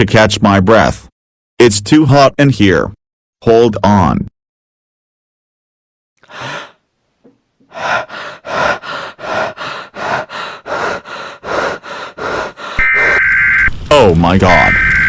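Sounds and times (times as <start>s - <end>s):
person panting heavily: 6.2s - 6.8s, 7.7s - 13.2s
short gasp: 6.2s - 6.8s
high electronic tone: 12.8s - 13.8s, 14.5s - 15.0s.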